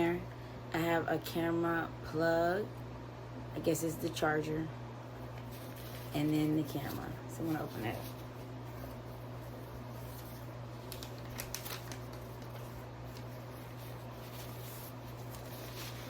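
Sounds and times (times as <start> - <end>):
low electrical hum: 0.0 - 16.0
packaging rustling and sliding: 5.3 - 16.0.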